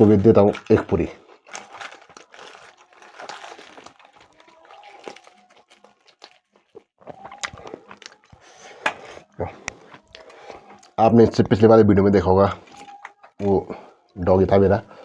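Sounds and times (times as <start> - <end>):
dog chewing and crunching: 0.0 - 8.5.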